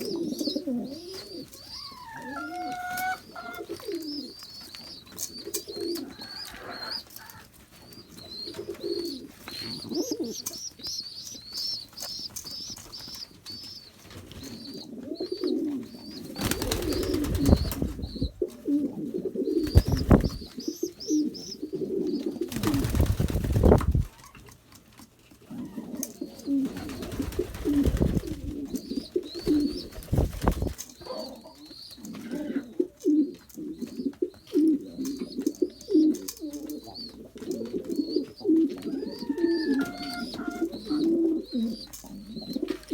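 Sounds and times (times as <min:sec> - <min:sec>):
pigeons cooing: 0:00.0 - 0:24.4, 0:25.4 - 0:42.9.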